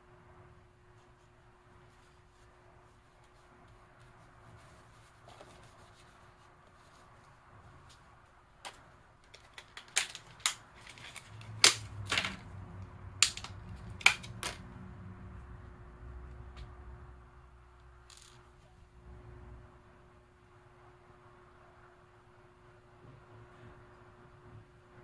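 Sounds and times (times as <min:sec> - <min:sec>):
small hard parts clicking: 0:08.6 - 0:12.5, 0:13.2 - 0:14.6.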